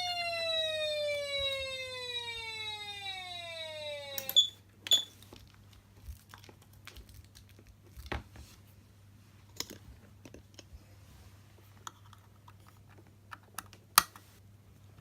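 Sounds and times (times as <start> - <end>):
electronic siren tone sliding down: 0.0 - 4.6.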